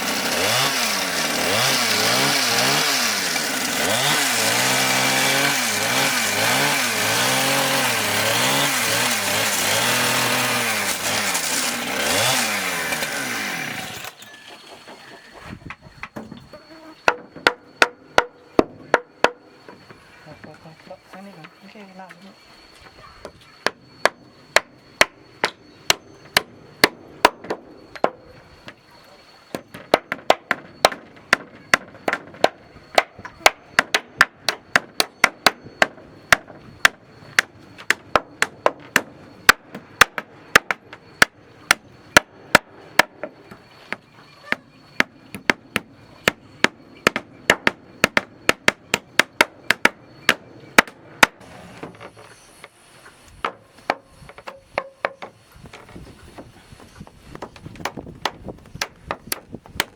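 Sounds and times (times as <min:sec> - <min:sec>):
hammer striking wood: 0:17.0 - 0:19.8, 0:23.2 - 0:28.2, 0:29.5 - 0:52.3, 0:53.4 - 0:56.5, 0:57.3 - 0:59.9.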